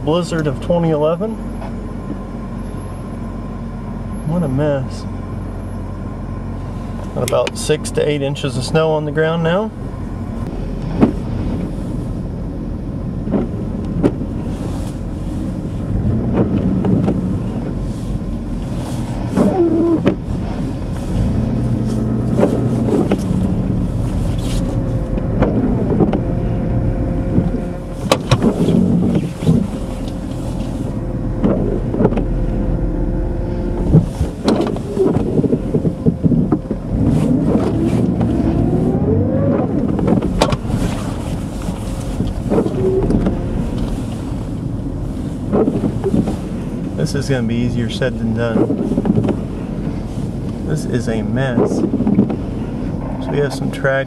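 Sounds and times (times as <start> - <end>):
engine and tyres rumbling: 0.0 - 54.0
short rising squeals: 36.9 - 40.0.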